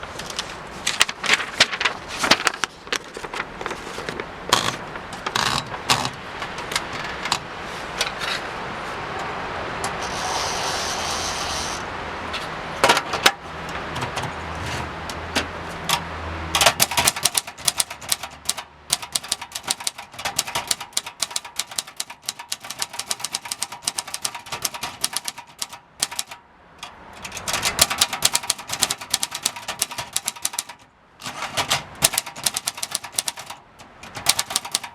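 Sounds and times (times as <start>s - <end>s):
steady rushing noise: 0.0s - 19.4s
typewriter clacking: 0.3s - 7.5s, 15.1s - 34.9s.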